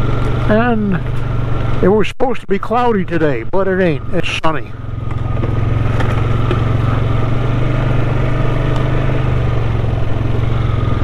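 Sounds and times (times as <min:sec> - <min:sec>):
off-road vehicle engine: 0:00.0 - 0:11.0.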